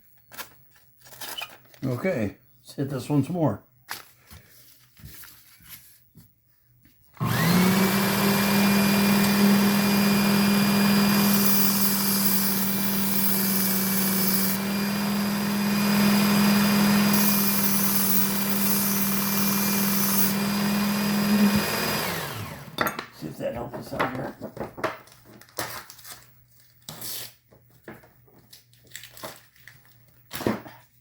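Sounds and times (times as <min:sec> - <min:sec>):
sharpener motor whining: 0:07.2 - 0:22.8.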